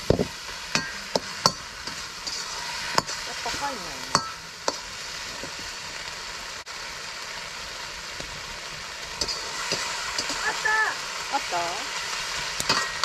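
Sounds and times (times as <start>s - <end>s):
food sizzling in a wok: 0.0s - 13.0s
metal utensil clicking on wok: 0.7s - 4.8s, 9.2s - 10.5s, 12.6s - 13.0s.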